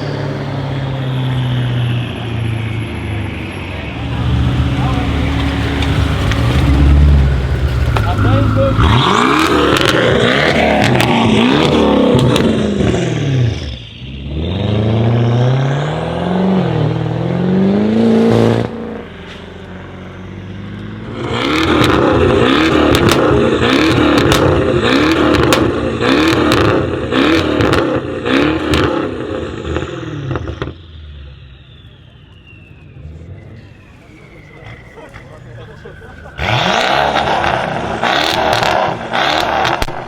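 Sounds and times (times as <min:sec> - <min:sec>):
car engine revving: 0:00.0 - 0:40.0
exhaust crackles and pops: 0:04.8 - 0:13.8, 0:20.7 - 0:40.0.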